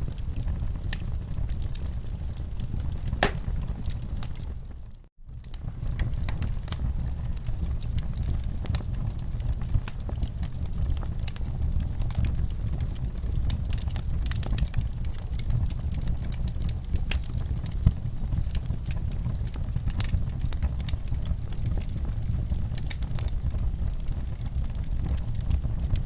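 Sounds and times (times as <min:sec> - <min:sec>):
wood fire crackling: 0:00.2 - 0:26.0
fire pops: 0:03.1 - 0:04.4.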